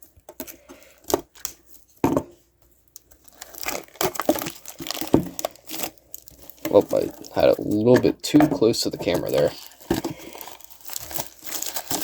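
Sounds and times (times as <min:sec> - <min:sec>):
plastic shrink wrap crinkling: 0:00.0 - 0:12.0
shrink wrap tearing: 0:03.0 - 0:08.0, 0:08.7 - 0:12.0.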